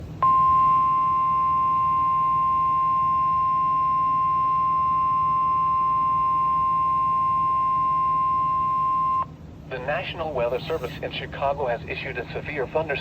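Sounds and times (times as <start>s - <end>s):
faint low hum: 0.0s - 13.0s
steady high alarm beep: 0.2s - 9.3s.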